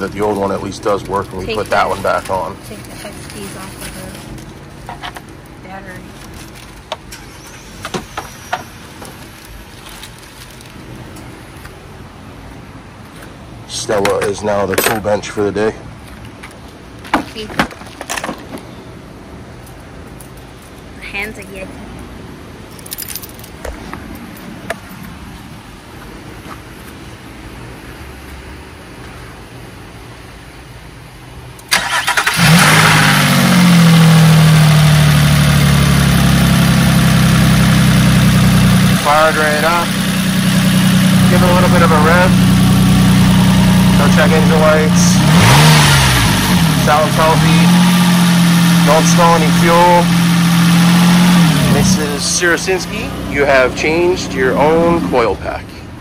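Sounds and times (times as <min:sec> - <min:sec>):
steady background hiss: 0:00.0 - 0:32.4
car engine starting and idling: 0:31.5 - 0:55.8.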